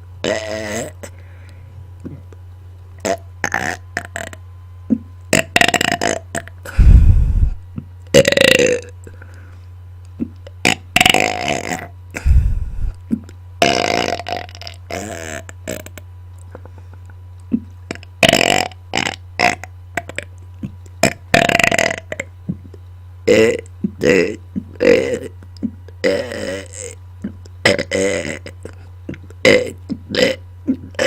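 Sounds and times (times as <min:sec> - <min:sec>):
steady low hum: 0:00.0 - 0:31.0
person belching: 0:00.2 - 0:01.1, 0:03.0 - 0:09.0, 0:10.2 - 0:13.0, 0:13.6 - 0:16.0, 0:17.5 - 0:20.3, 0:21.0 - 0:22.7, 0:23.3 - 0:25.4, 0:26.0 - 0:31.0.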